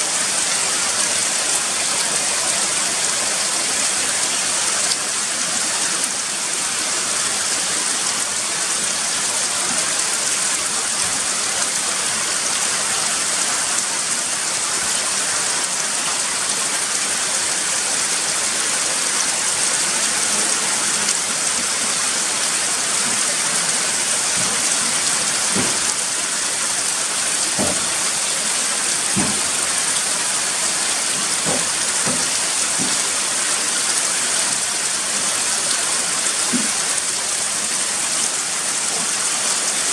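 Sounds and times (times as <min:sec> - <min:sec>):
heavy rain falling: 0:00.0 - 0:39.9
louder taps: 0:25.5 - 0:26.0, 0:27.6 - 0:28.0, 0:29.1 - 0:29.6, 0:31.4 - 0:33.0.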